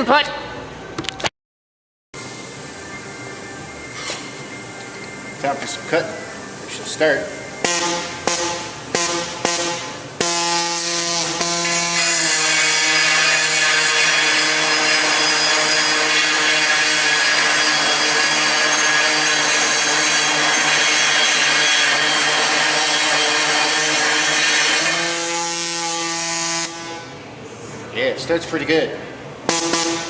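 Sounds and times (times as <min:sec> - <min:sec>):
power tool motor humming: 0:07.6 - 0:26.7
blade cutting steel: 0:07.6 - 0:26.8.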